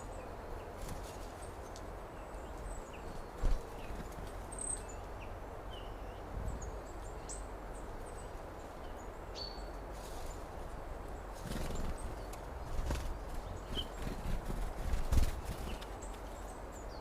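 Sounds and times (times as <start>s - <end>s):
steady background noise: 0.0s - 17.0s
bird chirps: 11.5s - 14.2s.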